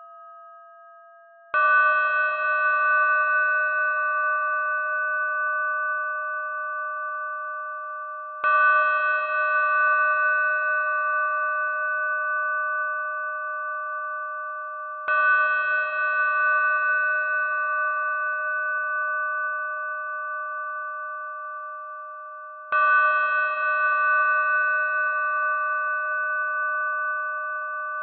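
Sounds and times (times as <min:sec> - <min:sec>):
small bell ringing: 0:00.0 - 0:04.1.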